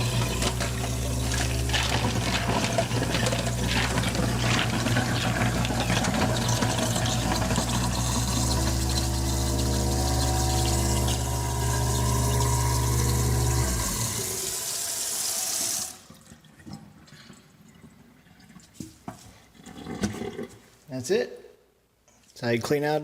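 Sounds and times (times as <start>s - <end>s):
garbage disposal motor humming: 0.0s - 16.1s
tap water running into sink: 0.0s - 19.2s.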